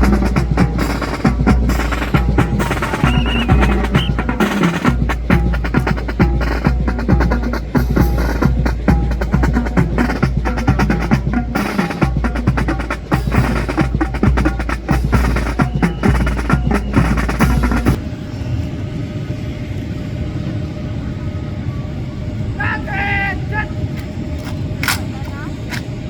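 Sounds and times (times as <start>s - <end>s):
drum beats: 0.0s - 18.0s
steady low rumble: 0.0s - 26.0s.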